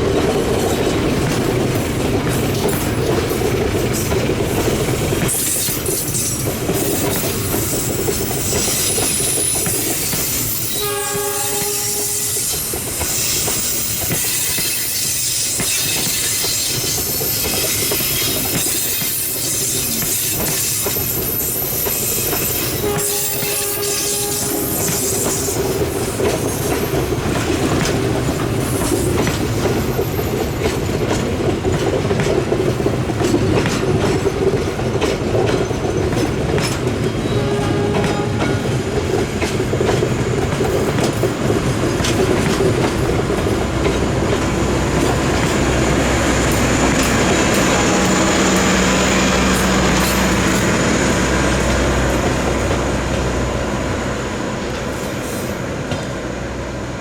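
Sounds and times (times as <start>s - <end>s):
train rumbling on rails: 0.0s - 57.0s
train horn blasts: 9.6s - 13.8s, 22.4s - 25.8s, 37.2s - 39.0s.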